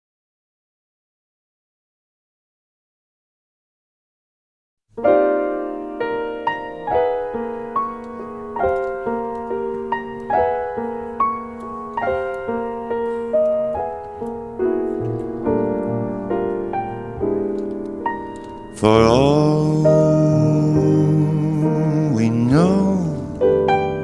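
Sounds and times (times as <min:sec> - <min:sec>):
slow solo piano: 0:04.9 - 0:24.0.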